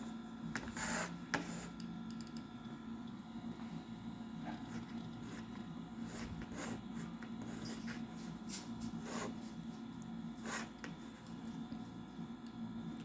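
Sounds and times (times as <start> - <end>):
computer hum: 0.0 - 13.0.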